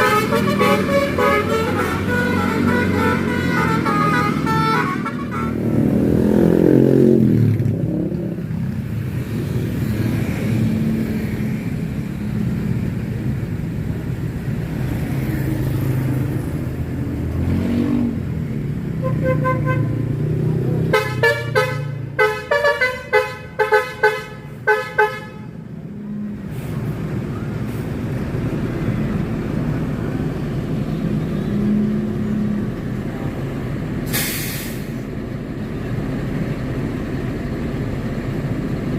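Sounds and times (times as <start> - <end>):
bus musical horn toots: 0.0 - 5.9, 19.0 - 20.0, 20.8 - 25.7
diesel engine rumble: 0.0 - 38.9.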